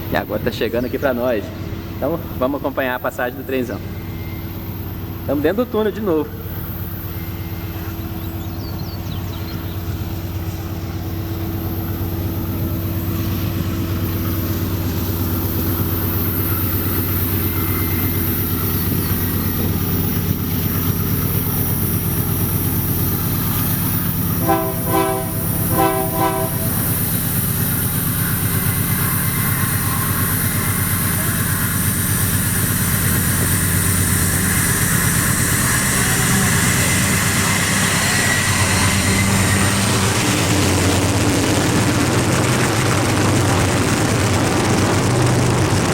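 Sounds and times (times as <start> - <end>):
locomotive engine drone echoing: 0.0 - 45.9
locomotive horn blasts: 24.3 - 27.3.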